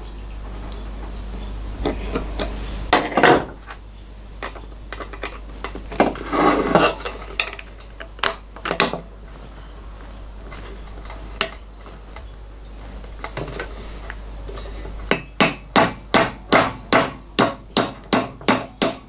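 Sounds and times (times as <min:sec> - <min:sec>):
hammer tapping on metal: 0:15.1 - 0:19.0.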